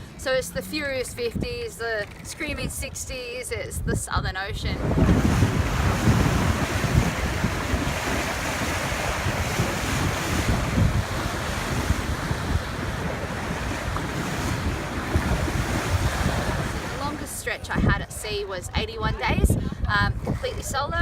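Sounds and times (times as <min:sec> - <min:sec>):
wind buffeting microphone: 0:00.0 - 0:21.0
sea waves rushing: 0:04.5 - 0:21.0.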